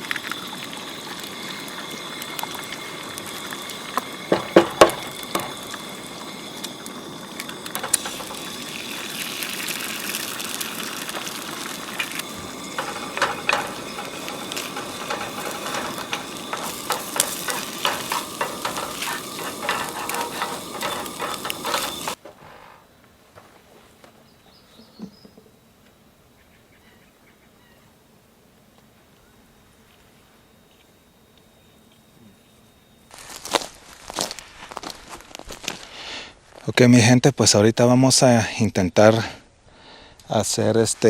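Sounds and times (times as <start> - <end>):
food sizzling in a pan: 0.0 - 22.2
utensil knocking against pan: 4.3 - 5.7, 12.5 - 22.2.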